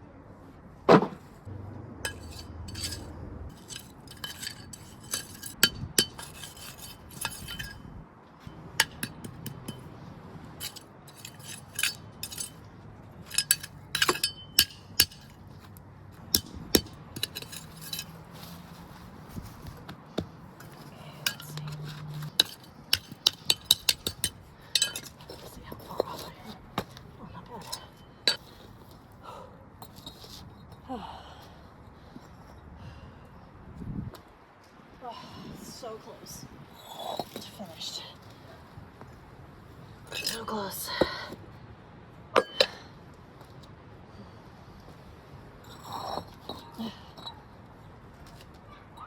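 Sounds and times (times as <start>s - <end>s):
pavers clinking against pavers: 2.0s - 30.8s, 36.8s - 41.4s, 42.3s - 43.8s, 45.0s - 49.0s.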